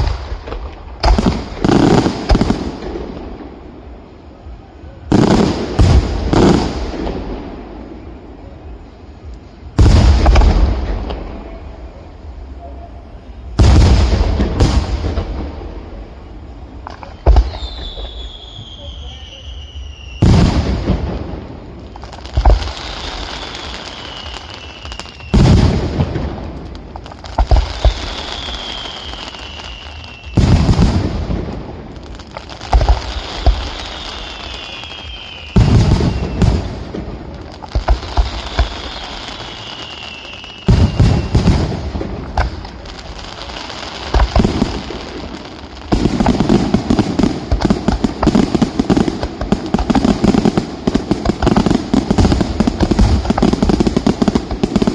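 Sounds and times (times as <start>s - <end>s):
firework bangs: 0.0s - 54.9s
firework falling whistle: 16.8s - 20.8s, 21.6s - 26.4s, 27.4s - 31.1s, 32.2s - 48.7s.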